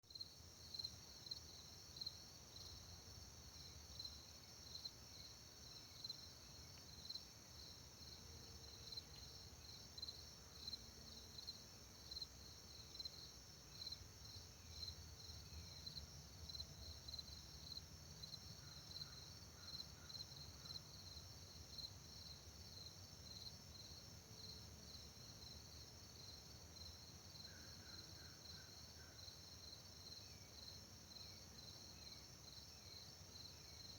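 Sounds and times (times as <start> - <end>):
crickets chirping: 0.1 - 33.9.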